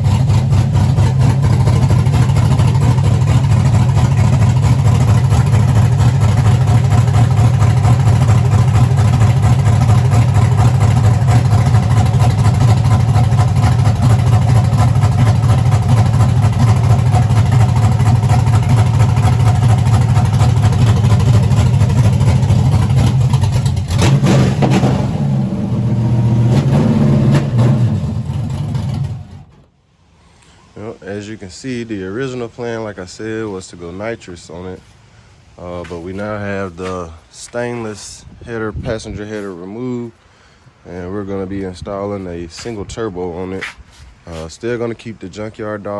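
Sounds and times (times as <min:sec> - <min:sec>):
v eight engine running: 0:00.0 - 0:29.7.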